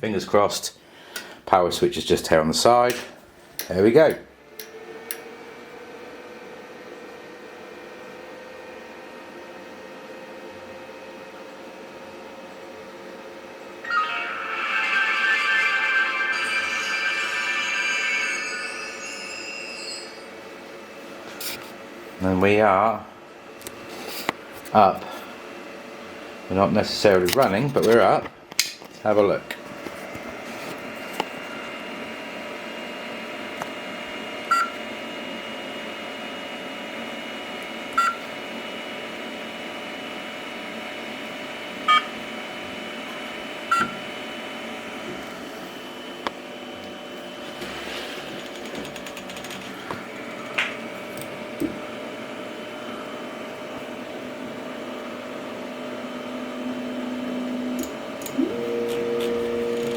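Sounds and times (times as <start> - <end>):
cooling fans running: 0.0 - 19.2, 20.2 - 59.9
stepper motors whining: 56.0 - 59.9.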